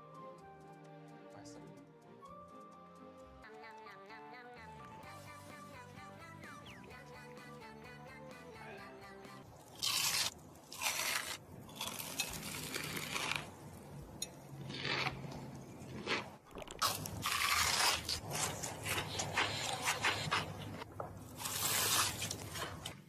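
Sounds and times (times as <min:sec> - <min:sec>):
crunchy food being chewed: 0:09.6 - 0:13.6, 0:14.6 - 0:23.0.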